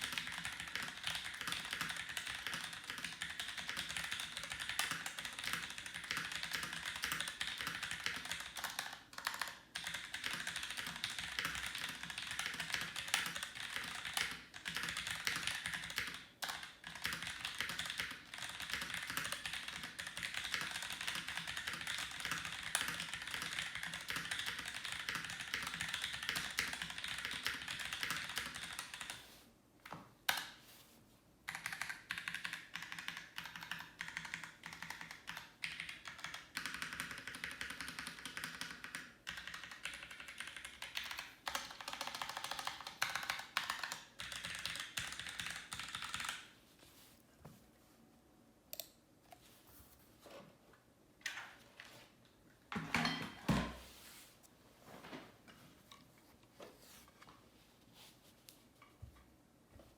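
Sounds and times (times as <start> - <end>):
typing on a keyboard: 0.0 - 29.2, 31.5 - 46.5.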